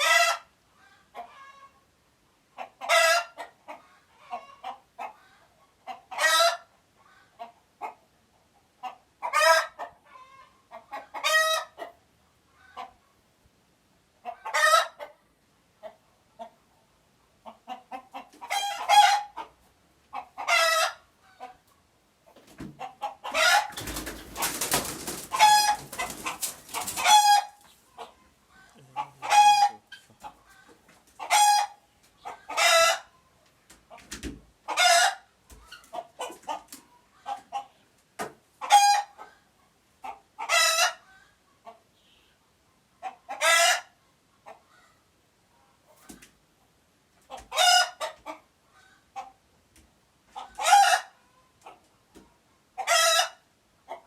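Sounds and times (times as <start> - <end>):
chickens squawking: 0.0 - 1.8, 2.6 - 8.0, 8.8 - 13.0, 14.2 - 16.6, 17.4 - 21.6, 22.3 - 33.2, 34.7 - 37.8, 38.6 - 39.4, 40.0 - 41.9, 43.0 - 45.0, 47.3 - 49.4, 50.4 - 51.9, 52.8 - 54.0
soft clucking: 25.3 - 37.8.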